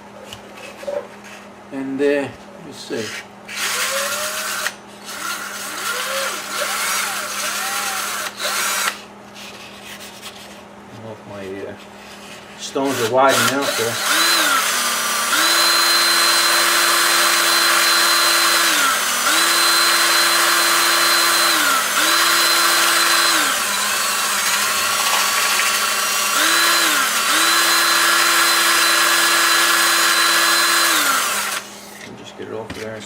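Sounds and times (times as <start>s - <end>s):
screw gun motor whine: 3.5s - 9.1s, 12.8s - 32.1s.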